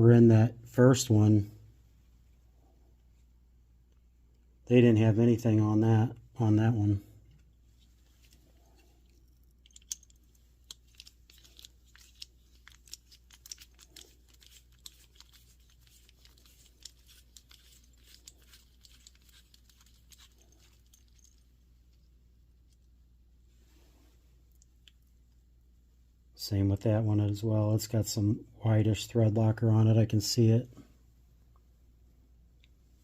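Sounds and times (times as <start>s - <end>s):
small screws and ratchet clicking: 9.0s - 21.4s.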